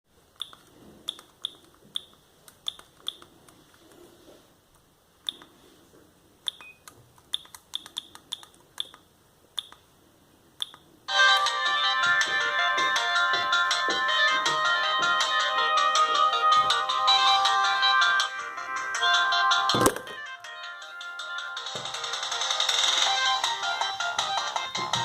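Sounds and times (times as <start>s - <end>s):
mobile phone ringtone: 11.1s - 25.0s.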